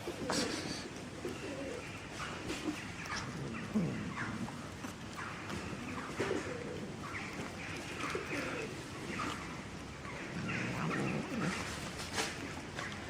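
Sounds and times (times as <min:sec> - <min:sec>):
low cooing call: 0:00.0 - 0:04.7, 0:10.2 - 0:12.0
birds chirping: 0:00.0 - 0:13.0.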